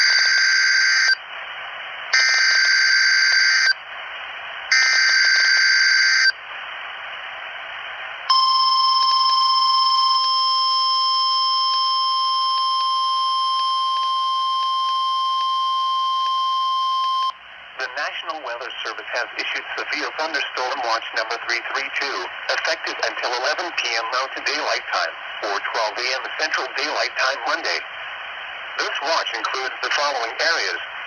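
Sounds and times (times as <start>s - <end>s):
radio static: 17.7s - 31.0s.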